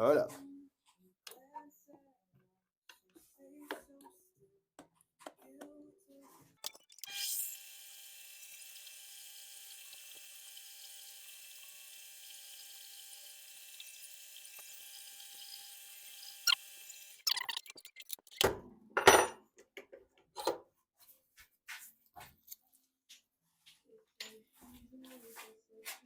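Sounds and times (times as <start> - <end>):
metal lathe running: 6.6 - 17.3.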